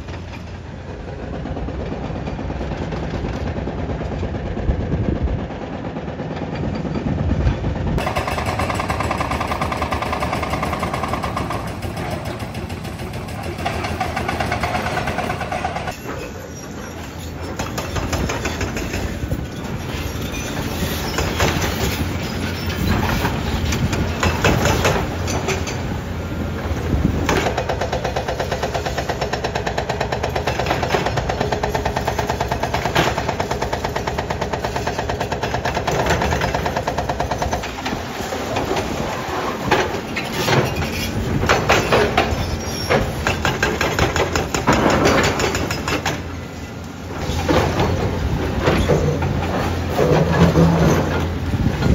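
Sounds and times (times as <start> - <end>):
diesel engine under load: 0.0 - 51.9
concrete crunching and banging: 34.6 - 46.2.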